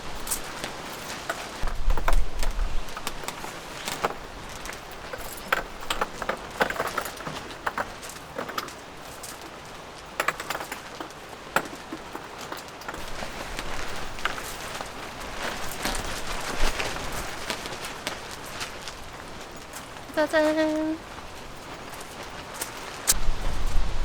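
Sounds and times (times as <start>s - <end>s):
wind rumble on microphone: 1.6s - 3.4s, 23.1s - 24.0s
clinks of small hard objects: 2.9s - 16.5s.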